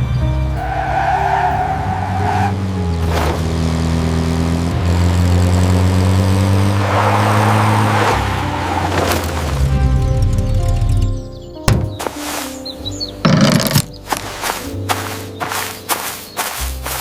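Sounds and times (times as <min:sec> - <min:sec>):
car engine running: 0:00.0 - 0:10.3.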